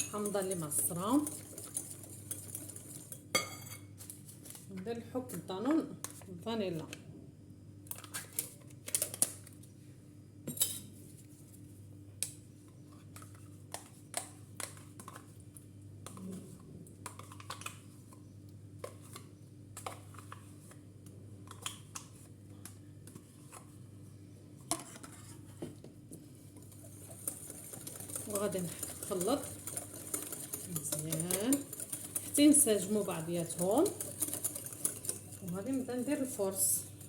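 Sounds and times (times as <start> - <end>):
spoon clinking against bowl: 0.0 - 0.7.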